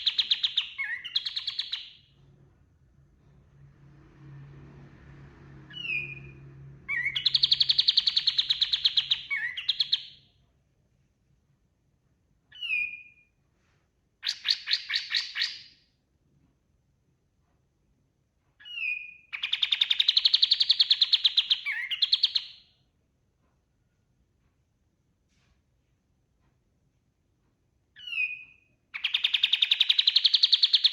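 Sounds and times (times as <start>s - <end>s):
songbird whistling and trilling: 0.0s - 2.1s, 5.7s - 6.3s, 6.9s - 10.2s, 12.5s - 13.3s, 14.2s - 15.7s, 18.6s - 22.6s, 28.0s - 30.9s.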